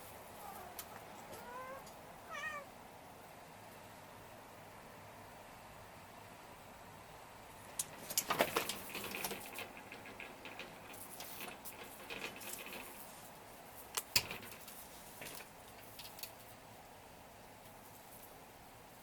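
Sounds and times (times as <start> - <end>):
cat chattering: 0.4 - 2.7.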